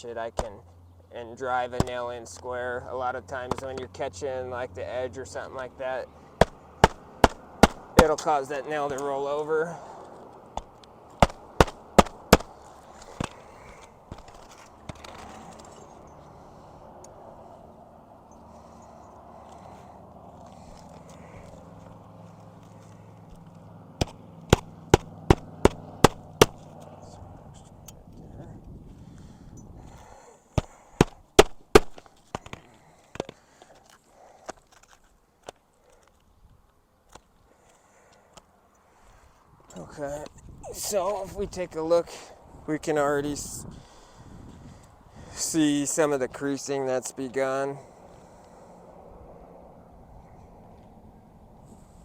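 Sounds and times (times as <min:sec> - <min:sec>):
hatchet striking nail: 0:06.4 - 0:08.1, 0:10.6 - 0:13.4, 0:24.0 - 0:26.7, 0:30.6 - 0:32.6.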